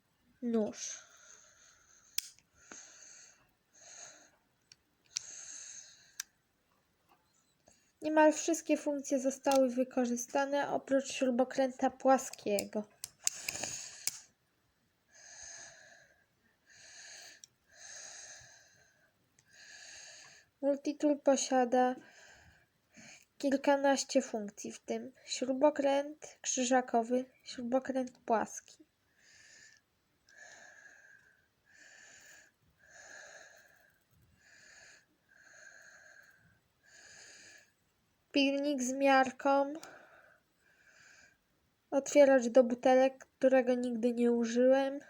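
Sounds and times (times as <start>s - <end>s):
wheezy breathing: 0.9s - 4.4s, 5.1s - 6.4s, 15.1s - 20.6s, 29.1s - 37.8s.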